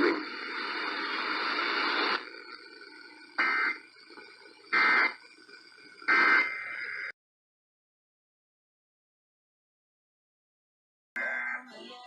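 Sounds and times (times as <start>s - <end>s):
faint radio hiss: 0.0s - 7.1s, 11.2s - 12.0s
short buzzing data bursts: 3.4s - 3.9s, 4.7s - 5.2s, 6.0s - 7.1s.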